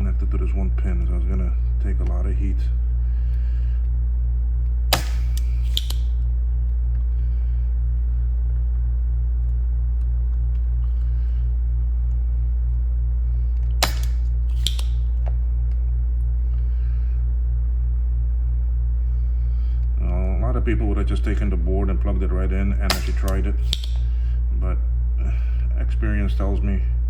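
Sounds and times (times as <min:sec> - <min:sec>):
pulsing buzz: 0:00.0 - 0:20.0
low electrical hum: 0:00.0 - 0:27.0
sharp clicks: 0:04.9 - 0:06.2, 0:13.6 - 0:15.1, 0:22.9 - 0:24.1.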